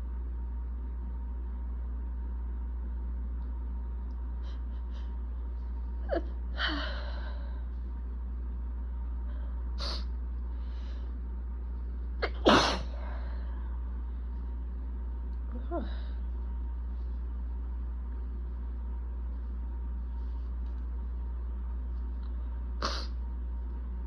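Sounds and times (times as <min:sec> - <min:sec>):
person sneezing: 0:12.2 - 0:13.0, 0:22.8 - 0:23.2.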